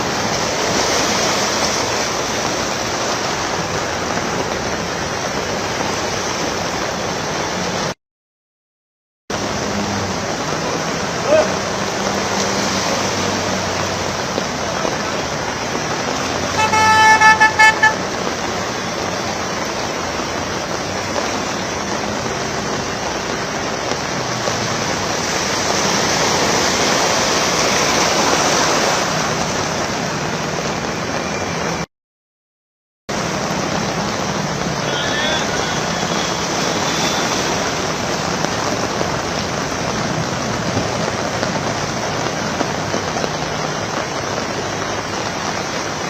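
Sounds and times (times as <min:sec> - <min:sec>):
heavy rain: 0:00.0 - 0:08.0, 0:09.3 - 0:31.9, 0:33.1 - 0:46.0
traffic on wet road: 0:00.0 - 0:08.0, 0:09.3 - 0:31.9, 0:33.1 - 0:46.0
car horn honking: 0:16.5 - 0:18.2, 0:34.8 - 0:37.6.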